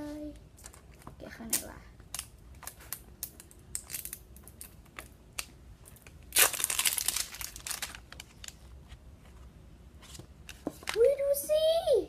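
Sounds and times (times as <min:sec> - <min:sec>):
plastic wrapping crinkling: 0:02.1 - 0:08.8.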